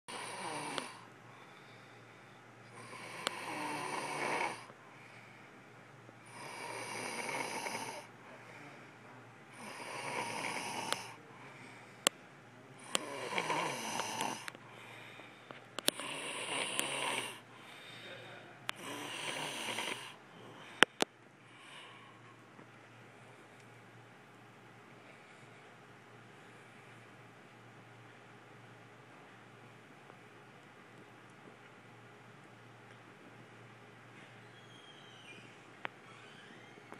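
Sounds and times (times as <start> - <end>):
person snoring: 0.1 - 1.1, 2.7 - 4.7, 6.2 - 8.9, 9.5 - 11.8, 12.8 - 15.2, 15.8 - 20.6.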